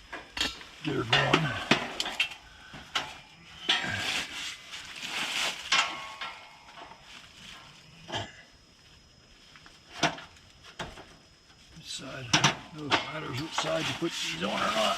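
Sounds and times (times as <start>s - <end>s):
hose rustling: 3.9s - 5.8s, 13.1s - 14.9s.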